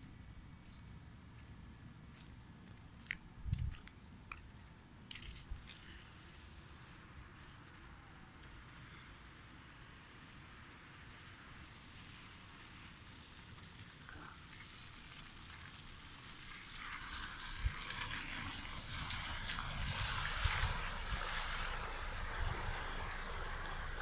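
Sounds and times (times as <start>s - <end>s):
wind buffeting microphone: 3.4s - 3.9s, 17.4s - 24.0s
heavy rain pouring: 13.8s - 24.0s.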